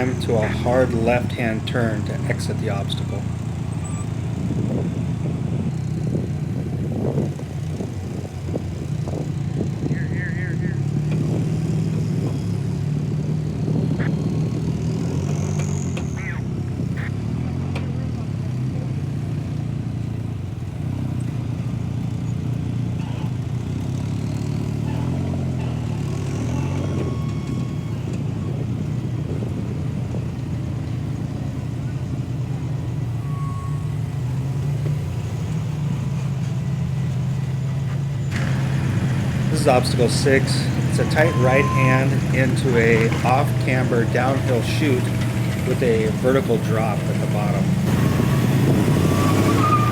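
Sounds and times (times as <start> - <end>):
engine running at low revs: 0.0 - 49.9
short high squeaks: 48.9 - 49.9.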